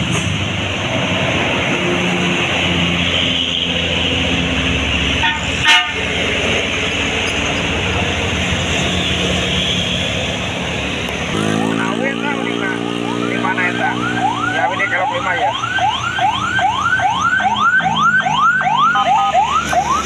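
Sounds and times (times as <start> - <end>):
road noise: 0.0 - 20.0
horn toot: 5.2 - 6.1.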